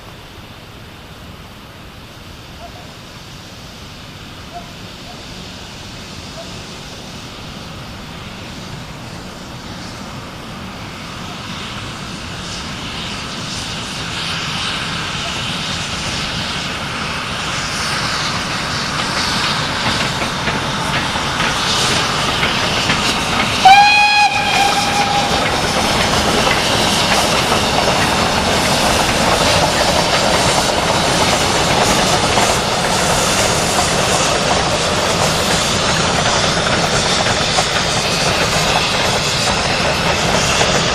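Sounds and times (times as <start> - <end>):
steam goods train running: 0.0 - 40.9
steam locomotive whistle: 23.5 - 27.1.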